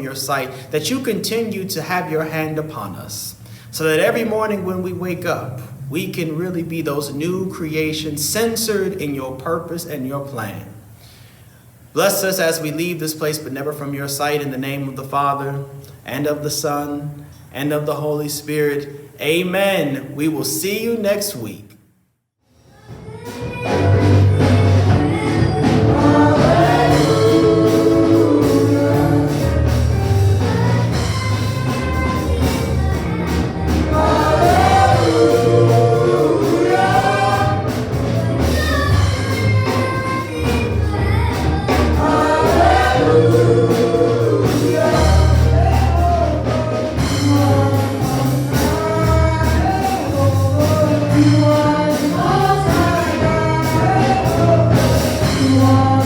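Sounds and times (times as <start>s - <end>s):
band accompaniment with bass: 22.8s - 56.0s
gospel choir singing: 23.6s - 56.0s.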